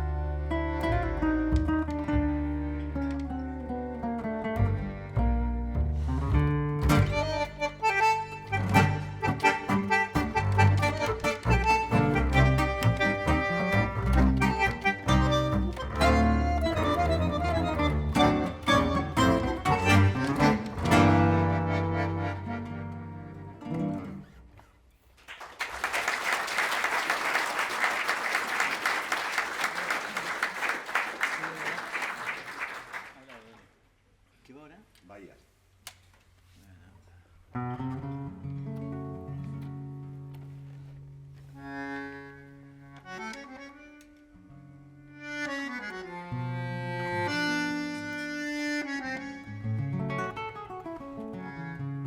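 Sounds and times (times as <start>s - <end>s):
accordion chords: 0.0s - 5.8s, 6.8s - 24.3s, 41.3s - 52.0s
guitar strums: 0.8s - 24.4s
audience applauding: 25.2s - 33.7s.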